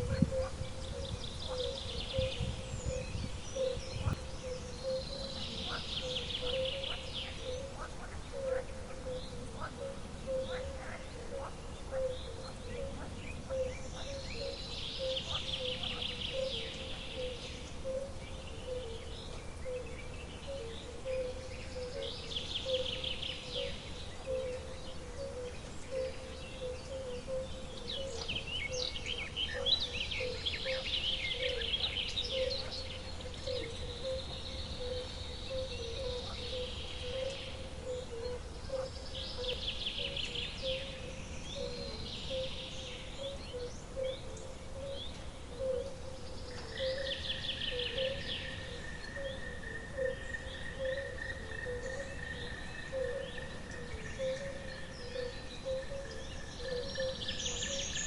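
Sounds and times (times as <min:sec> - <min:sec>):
birds trilling: 0:00.0 - 0:58.0.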